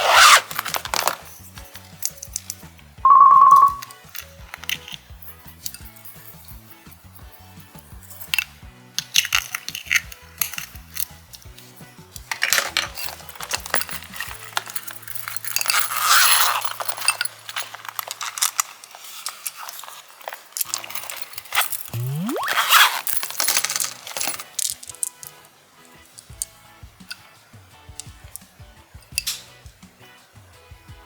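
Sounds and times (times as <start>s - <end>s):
quiet background music: 0.0s - 31.0s
rising swoop: 21.9s - 22.8s
slime clicking and clinking: 21.9s - 22.8s.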